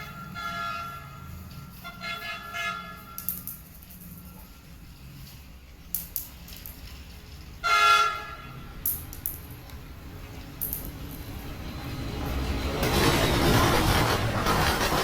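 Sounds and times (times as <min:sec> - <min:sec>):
model train horn toot: 0:00.0 - 0:03.2, 0:07.6 - 0:08.6.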